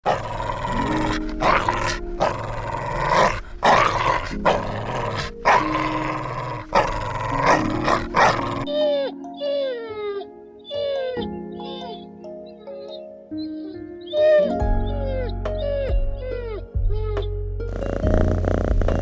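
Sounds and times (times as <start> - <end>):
dog barking: 0.0 - 8.7
background music: 0.0 - 19.0.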